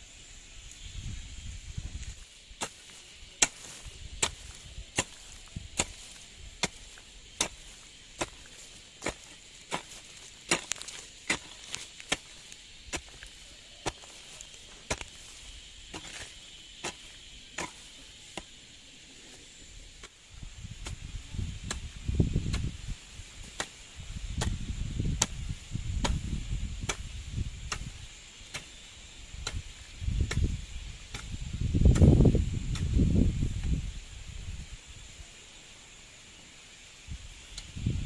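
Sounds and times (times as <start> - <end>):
hand tool chopping ground: 2.0 - 18.6, 19.9 - 33.8.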